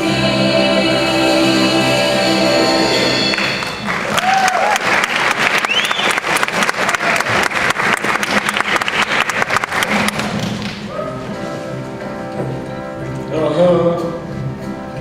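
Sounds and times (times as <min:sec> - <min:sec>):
audience applauding: 0:03.3 - 0:10.8
crowd whoops: 0:03.9 - 0:06.3.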